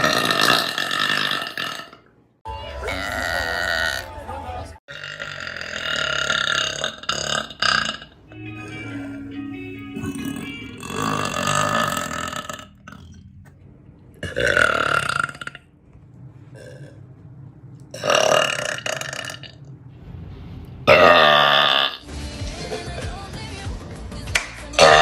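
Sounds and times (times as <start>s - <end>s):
woman burping loudly: 0.0s - 2.1s, 4.9s - 9.3s, 9.9s - 13.2s, 14.2s - 15.7s, 20.9s - 22.0s, 24.8s - 25.0s.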